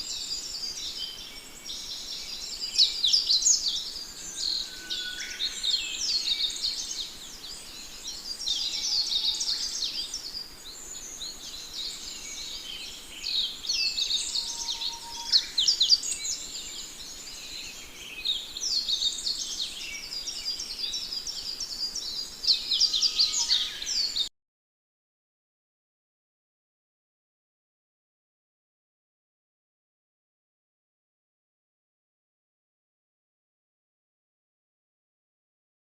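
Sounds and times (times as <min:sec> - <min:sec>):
sparrows chirping: 0:00.0 - 0:24.3.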